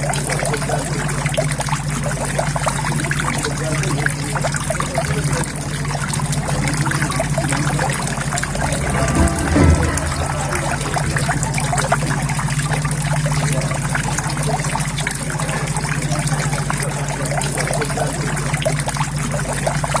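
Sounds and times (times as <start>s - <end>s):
low steady hum: 6.7s - 12.6s
low thump: 8.1s - 11.8s.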